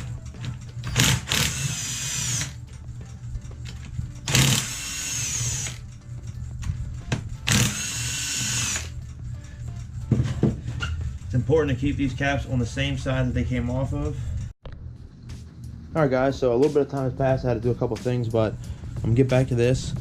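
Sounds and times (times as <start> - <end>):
power tool spinning out bolts: 0.8 - 2.6, 4.3 - 5.8, 7.5 - 9.0.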